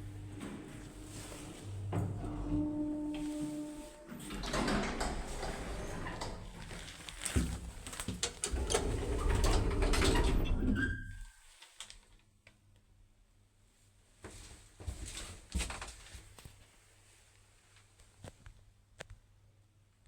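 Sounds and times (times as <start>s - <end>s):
lift doors clattering: 0.0s - 7.0s, 8.3s - 11.1s.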